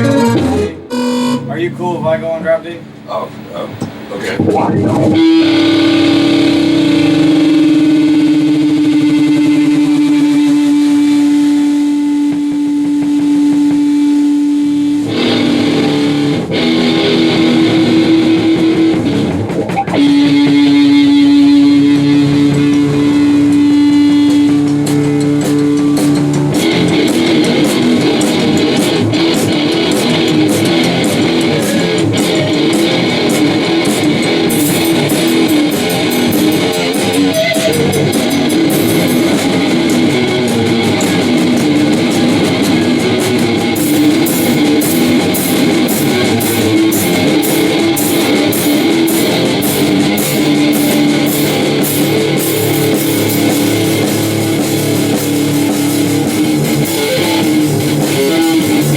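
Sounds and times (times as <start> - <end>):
electric guitar rock jam: 0.0 - 58.9.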